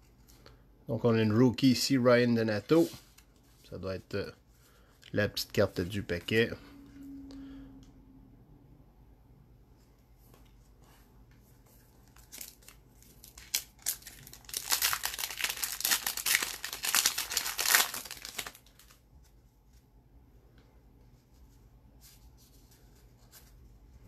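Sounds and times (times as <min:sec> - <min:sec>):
wrapper crinkling and tearing: 0:12.1 - 0:19.0.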